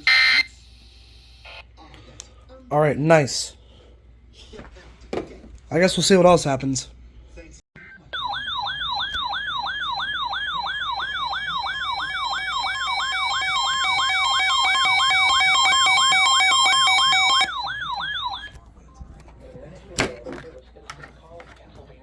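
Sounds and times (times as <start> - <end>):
falling yelp siren alert tone: 7.8 - 18.6.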